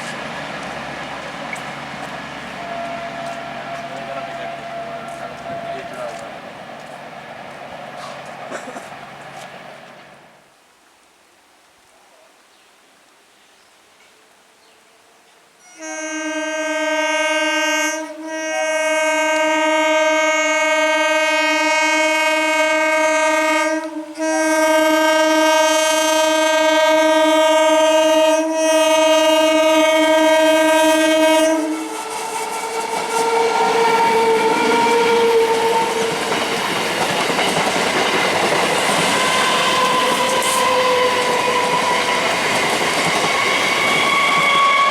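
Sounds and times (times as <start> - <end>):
train air horn honking: 2.2 - 6.3, 15.6 - 36.6
train wheels clattering: 31.8 - 44.9
wheel squeal: 39.1 - 44.9.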